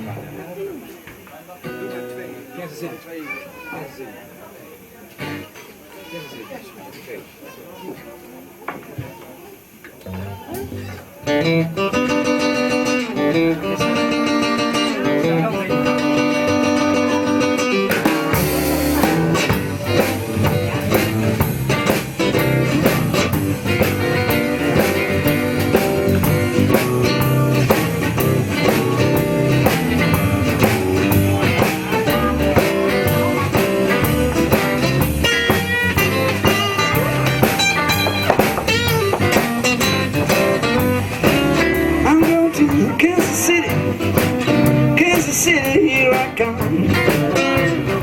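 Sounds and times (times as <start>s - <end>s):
electric guitar: 5.1s - 5.8s, 9.7s - 48.0s
live blues band playing: 10.0s - 48.0s.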